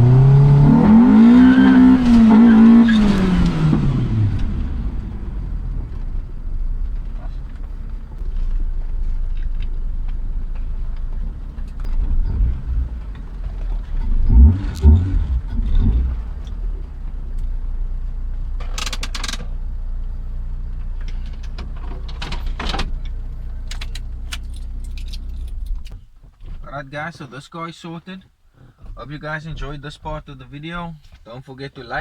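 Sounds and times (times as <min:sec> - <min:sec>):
car engine revving: 0:00.0 - 0:25.9
sharp clattering clicks: 0:18.6 - 0:19.6.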